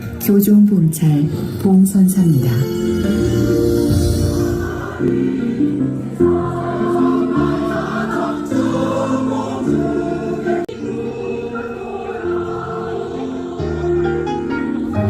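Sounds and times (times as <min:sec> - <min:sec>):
choral singing: 0:03.8 - 0:15.0.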